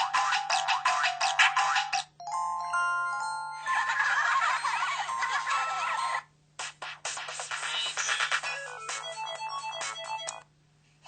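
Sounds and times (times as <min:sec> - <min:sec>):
mobile phone ringtone melody: 0:02.2 - 0:06.3, 0:08.4 - 0:10.4.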